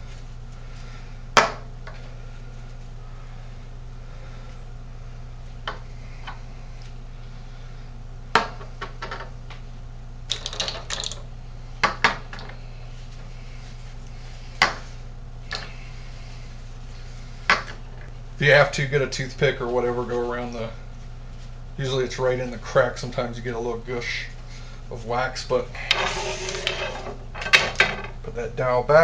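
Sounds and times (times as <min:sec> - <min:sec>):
steady low hum: 0:00.0 - 0:29.0
small hard objects clicking: 0:10.3 - 0:11.2.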